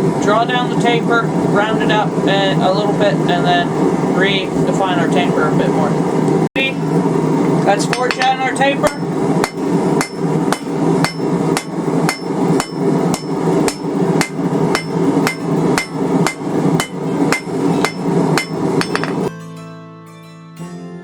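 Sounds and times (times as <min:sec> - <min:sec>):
steady rushing noise: 0:00.0 - 0:19.3
hammer striking steel on anvil: 0:07.9 - 0:19.3
music: 0:16.9 - 0:21.0.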